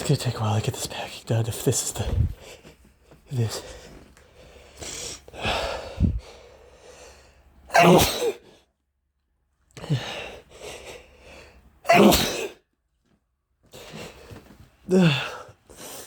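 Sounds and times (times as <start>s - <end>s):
man sneezing: 7.7s - 8.5s, 11.8s - 12.6s.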